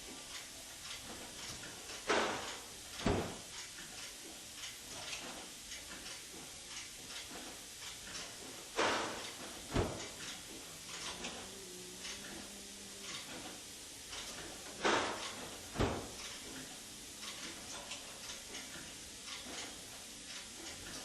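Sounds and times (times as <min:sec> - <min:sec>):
refrigerator door opening: 0:09.7 - 0:10.1, 0:14.8 - 0:16.2.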